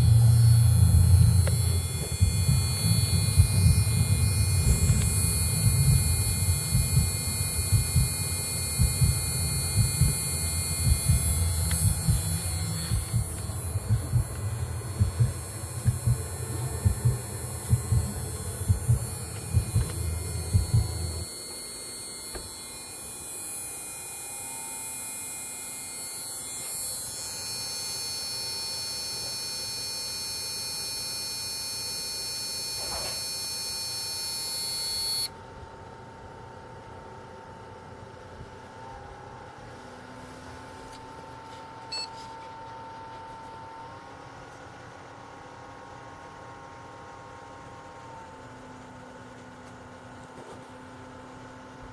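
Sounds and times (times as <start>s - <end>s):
high-pitched electrical whine: 0.0s - 35.4s
low pulsing electrical buzz: 0.0s - 51.9s.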